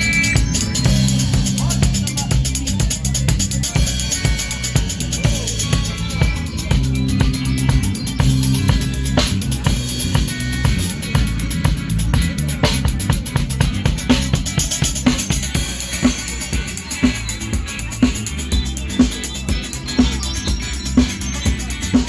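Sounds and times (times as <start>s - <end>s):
bass line: 0.0s - 22.0s
drum kit beat: 0.0s - 22.0s
guitar: 0.0s - 22.0s.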